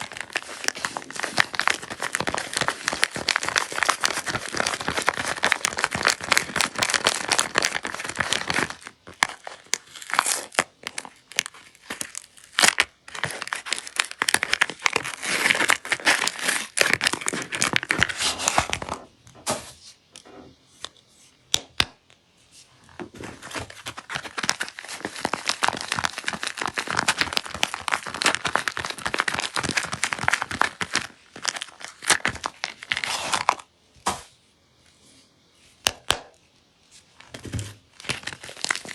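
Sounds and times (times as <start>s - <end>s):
packaging torn and crinkled: 0.0s - 19.0s, 23.3s - 33.7s, 37.9s - 38.9s.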